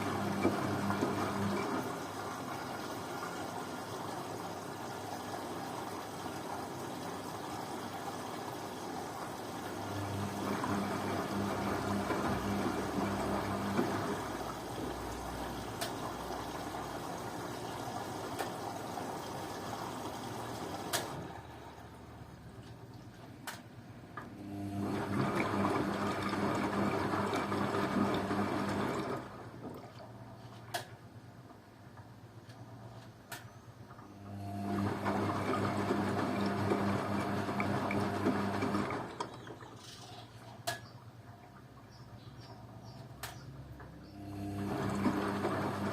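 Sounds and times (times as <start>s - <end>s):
low motor hum: 0.0s - 3.6s, 9.7s - 17.5s
water swishing in washing machine: 0.0s - 23.6s, 24.2s - 45.9s.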